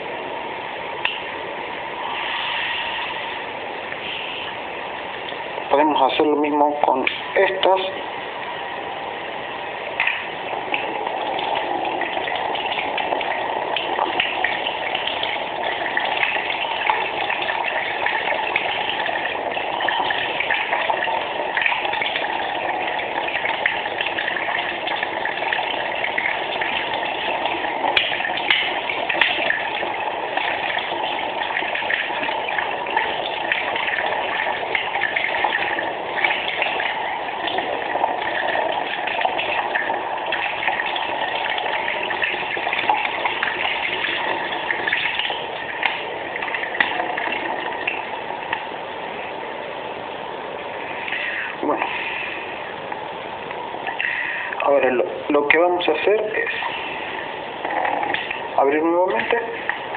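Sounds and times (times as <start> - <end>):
tap water splashing: 1.0 - 1.3, 9.9 - 48.8.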